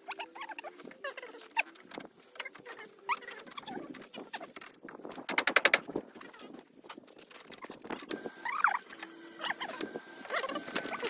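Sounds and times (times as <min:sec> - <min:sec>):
tool clatter and clicks: 0:01.4 - 0:08.2.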